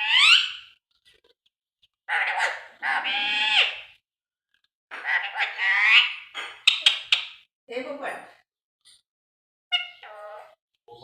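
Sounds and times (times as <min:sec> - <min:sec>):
parrot squawking: 0:00.0 - 0:00.8, 0:02.1 - 0:03.9, 0:04.9 - 0:07.3, 0:09.7 - 0:10.6.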